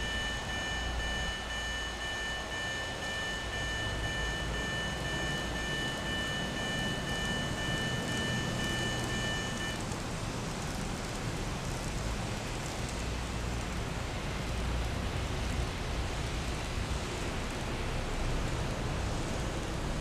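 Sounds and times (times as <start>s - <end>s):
level crossing alarm tone: 0.0s - 9.8s.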